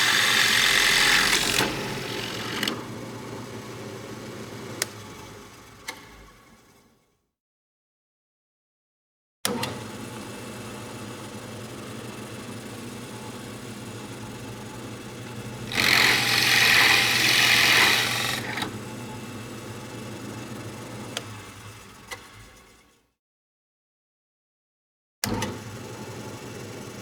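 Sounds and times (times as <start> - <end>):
hammer drill running: 0.0 - 2.8, 15.6 - 18.7.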